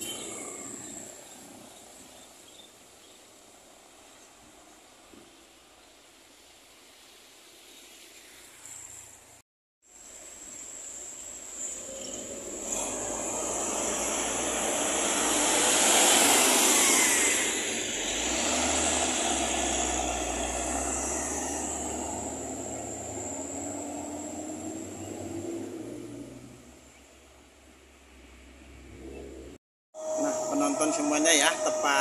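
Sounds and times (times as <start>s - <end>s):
heavy vehicle passing by: 12.2s - 26.8s.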